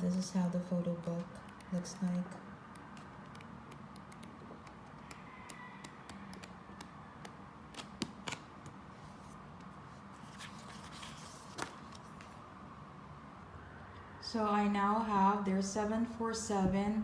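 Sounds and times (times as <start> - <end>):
paper rustling: 7.7 - 12.4.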